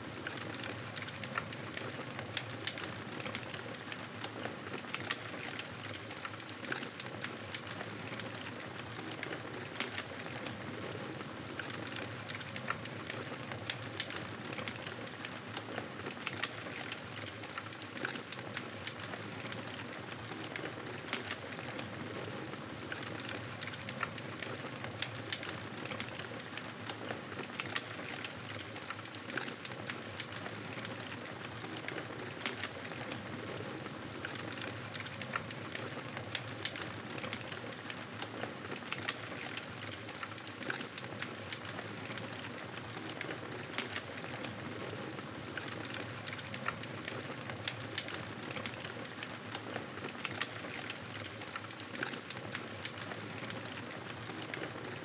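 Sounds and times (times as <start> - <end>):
campfire crackling and popping: 38.3 - 55.0.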